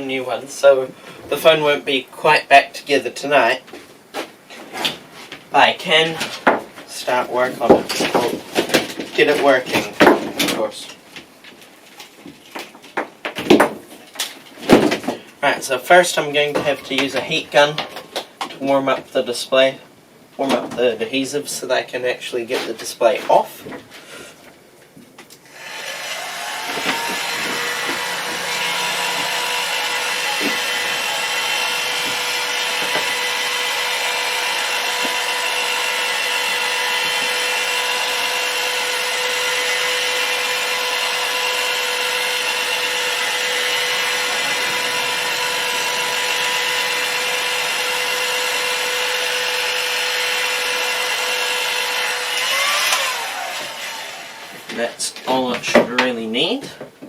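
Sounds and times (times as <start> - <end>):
heat gun fan whine: 25.4 - 54.8.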